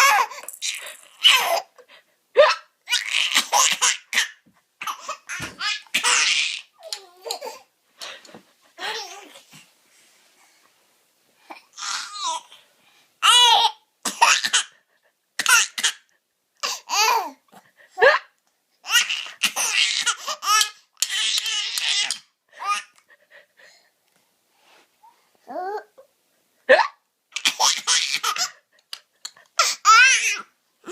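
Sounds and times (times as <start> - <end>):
baby laughing: 0.0 - 1.8, 2.4 - 7.6, 27.4 - 30.9.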